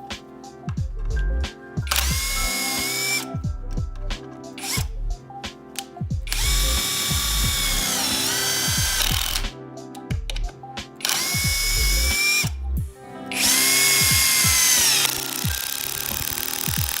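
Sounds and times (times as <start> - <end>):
impact wrench motor whine: 1.9 - 3.2, 6.3 - 9.4, 11.1 - 12.5, 13.4 - 17.0.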